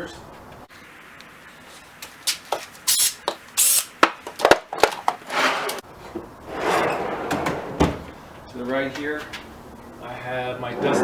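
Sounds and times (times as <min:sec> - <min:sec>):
wooden drawer sliding scrapes: 0:05.2 - 0:05.8, 0:06.5 - 0:08.1.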